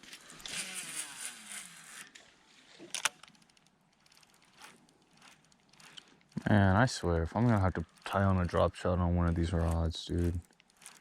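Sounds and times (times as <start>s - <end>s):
fishing reel spool whirring: 0.0s - 11.0s.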